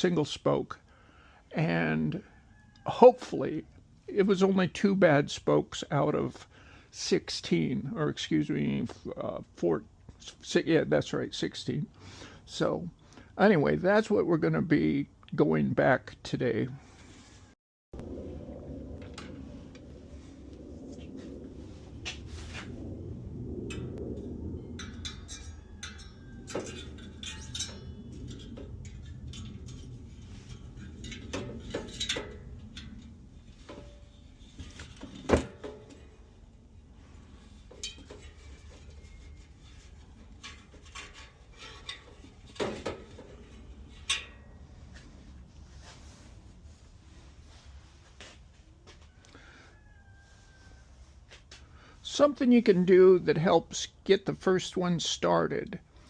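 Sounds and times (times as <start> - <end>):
metallic clinks of bicycle spokes: 24.8 - 33.2, 37.7 - 38.6.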